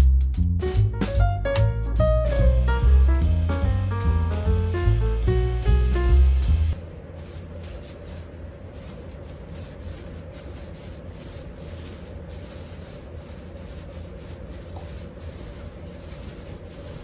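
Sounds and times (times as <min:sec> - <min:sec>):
sanding-like rubbing on surface: 0:04.5 - 0:17.0.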